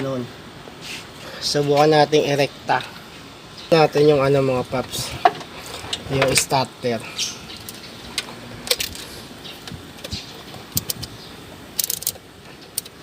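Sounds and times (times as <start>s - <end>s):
steady background hum: 0.0s - 13.0s
tools clicking and clinking: 11.8s - 13.0s.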